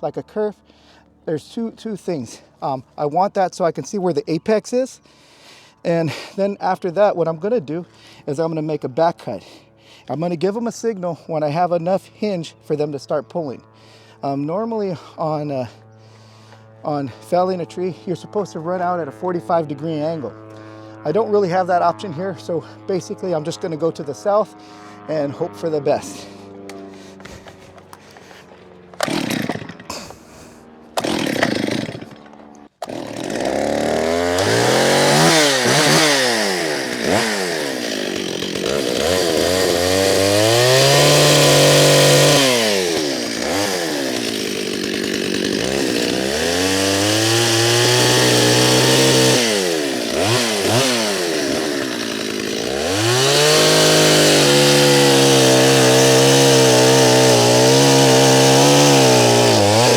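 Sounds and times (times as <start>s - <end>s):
chainsaw revving: 4.6s - 10.8s, 11.4s - 59.9s.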